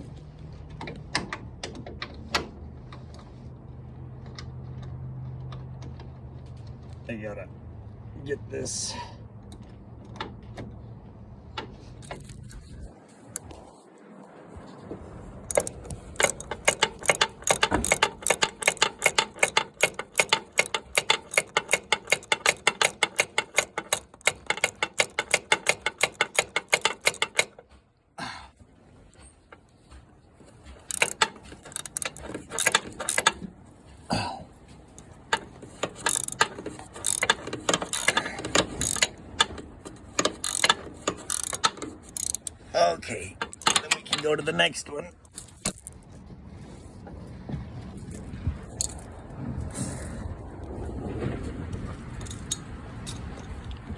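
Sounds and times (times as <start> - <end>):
socket ratchet clicking: 15.5 - 27.6, 30.8 - 33.4, 35.0 - 42.7, 43.3 - 44.2.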